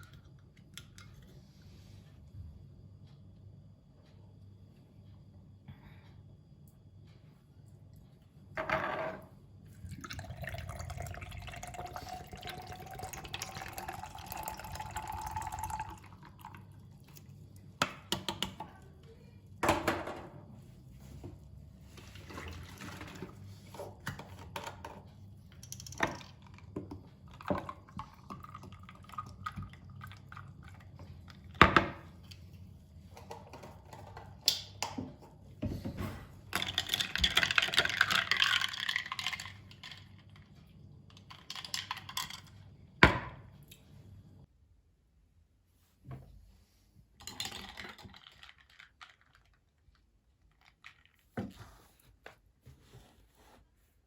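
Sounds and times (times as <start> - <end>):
liquid pouring into container: 9.7 - 17.3, 27.3 - 31.4.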